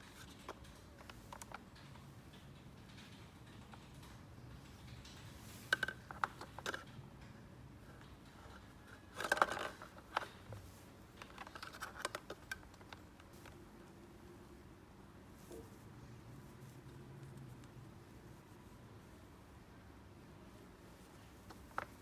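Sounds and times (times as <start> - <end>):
plastic toy parts clicking: 0.1 - 7.0, 8.0 - 10.5, 11.1 - 13.6.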